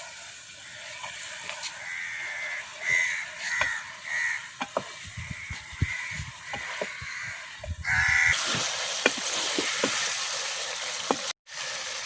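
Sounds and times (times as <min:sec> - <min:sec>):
food sizzling in a pan: 0:00.0 - 0:12.0
spoon stirring and scraping: 0:02.9 - 0:10.1.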